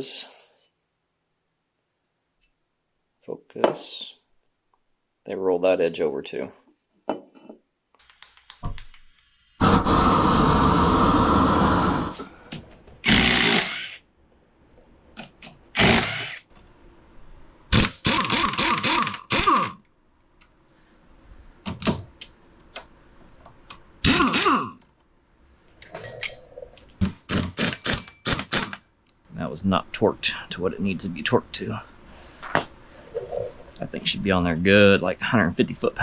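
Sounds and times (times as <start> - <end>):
impact wrench running: 13.0 - 14.0, 15.8 - 16.4, 17.7 - 19.8, 24.0 - 24.7, 27.0 - 28.8.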